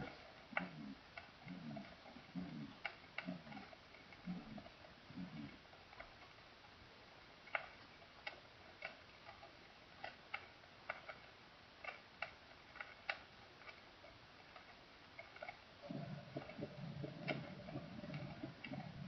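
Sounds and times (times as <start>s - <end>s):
heartbeat clicks: 15.8s - 19.0s.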